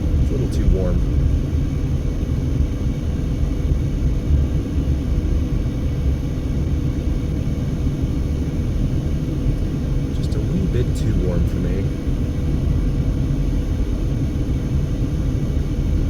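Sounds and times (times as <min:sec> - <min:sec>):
car driving rumble: 0:00.0 - 0:16.0
gusty wind buffeting car: 0:00.0 - 0:16.0.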